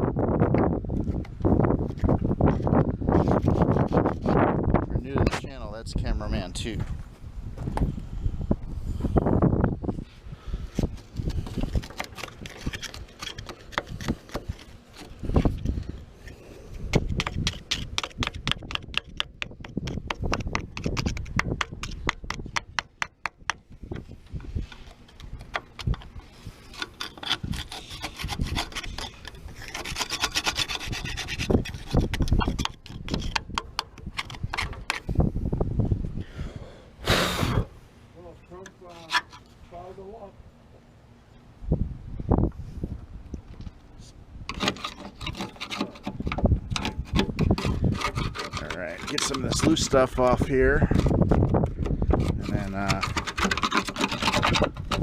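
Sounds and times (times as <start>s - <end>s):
scraping: 9.8s - 23.1s, 23.7s - 35.3s, 38.2s - 40.2s, 43.6s - 55.0s
rapid tool clicking: 52.2s - 55.0s.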